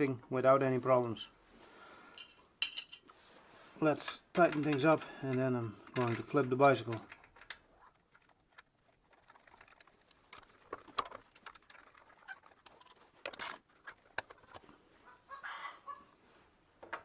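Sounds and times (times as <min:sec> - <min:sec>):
chicken clucking: 0:13.9 - 0:16.2.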